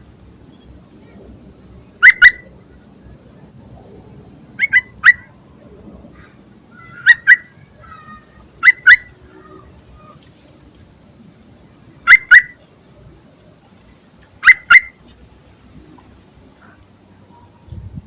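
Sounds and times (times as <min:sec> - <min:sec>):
bird chattering: 0:01.9 - 0:02.8, 0:04.6 - 0:05.4, 0:06.2 - 0:10.2, 0:12.0 - 0:12.6, 0:14.3 - 0:15.0
bird calling sharp notes: 0:02.0 - 0:02.6, 0:04.6 - 0:05.4, 0:06.2 - 0:10.2, 0:11.9 - 0:12.6, 0:14.2 - 0:15.1.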